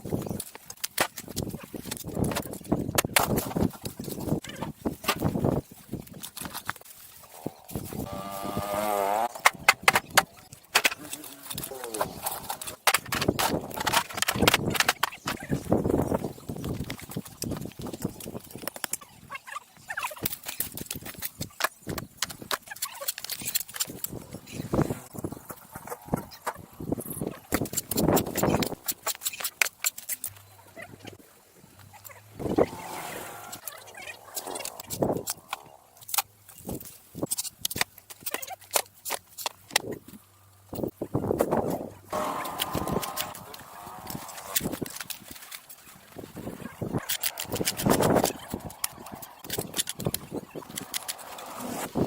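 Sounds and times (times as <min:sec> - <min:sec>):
rough scraping: 0:03.2 - 0:16.4, 0:32.1 - 0:37.6, 0:41.5 - 0:52.0.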